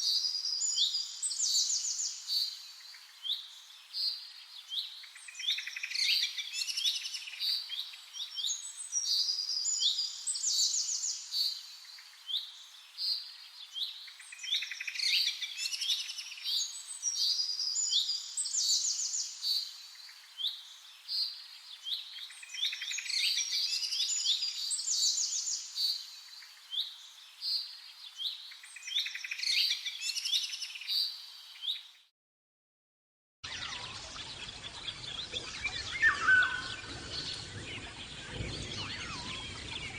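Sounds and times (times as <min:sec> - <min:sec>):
birds chirping and singing: 0:33.4 - 0:39.9.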